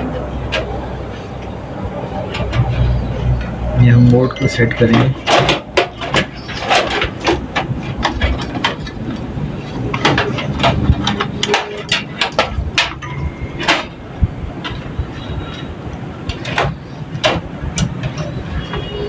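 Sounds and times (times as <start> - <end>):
hardware knocking in metal case: 4.7 - 19.0.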